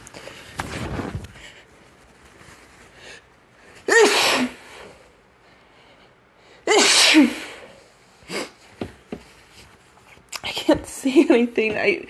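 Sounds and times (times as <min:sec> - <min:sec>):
person sneezing: 0:03.8 - 0:04.9, 0:06.7 - 0:08.6.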